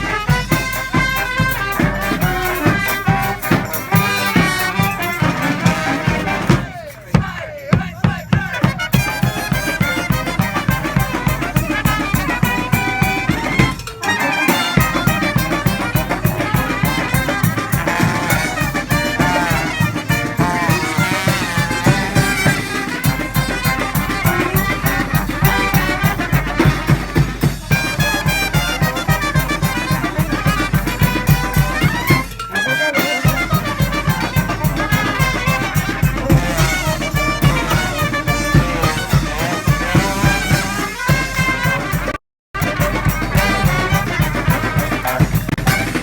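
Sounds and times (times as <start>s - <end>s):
brass band playing: 0.0s - 46.0s
steady drum beat: 0.0s - 46.0s.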